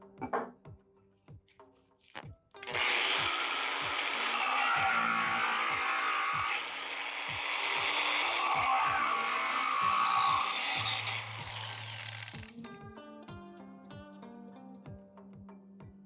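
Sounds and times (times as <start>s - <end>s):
power tool whirring on wood: 2.6s - 12.6s.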